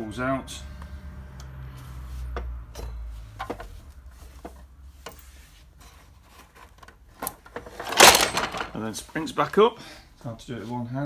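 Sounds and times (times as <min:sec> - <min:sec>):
saw handling clicks and knocks: 0:06.6 - 0:08.9.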